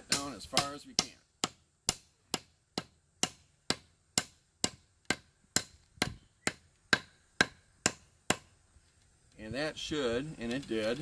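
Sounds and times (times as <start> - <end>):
hammer striking wooden wedge: 0.0 - 8.5.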